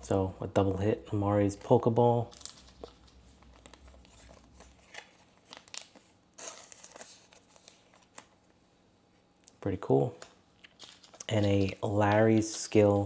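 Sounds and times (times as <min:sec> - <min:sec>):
trading cards rustling: 0:02.2 - 0:08.4, 0:10.1 - 0:13.0.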